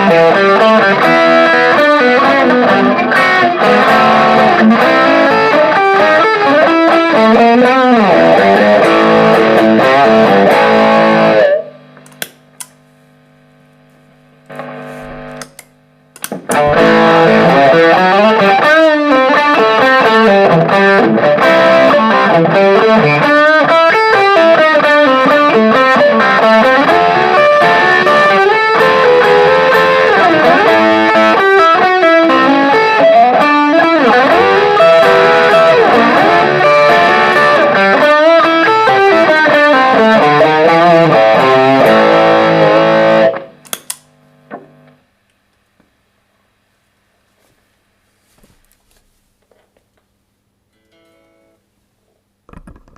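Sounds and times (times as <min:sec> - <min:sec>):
distorted electric guitar lead: 0:00.0 - 0:45.0
amp hum: 0:00.0 - 0:52.9
sharp clicks: 0:12.0 - 0:12.8, 0:15.3 - 0:16.7, 0:43.6 - 0:44.1.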